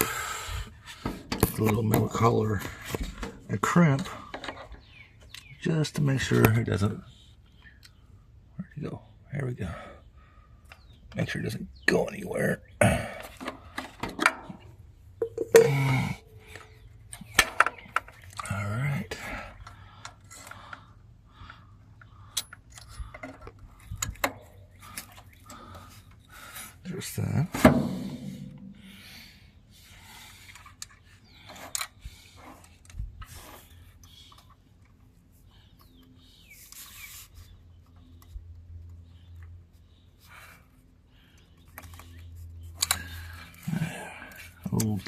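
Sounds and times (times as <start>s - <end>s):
steady low hum: 27.6s - 30.4s.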